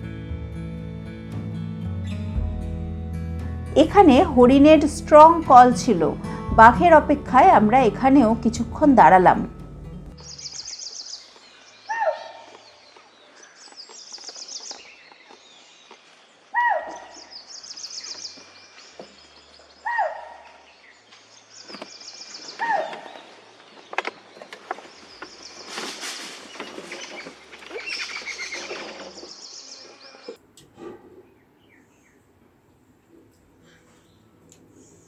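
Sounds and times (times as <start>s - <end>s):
small birds trilling: 10.2s - 35.0s
deer alarm barks: 11.9s - 12.6s, 16.6s - 17.2s, 19.8s - 20.6s, 22.6s - 23.2s.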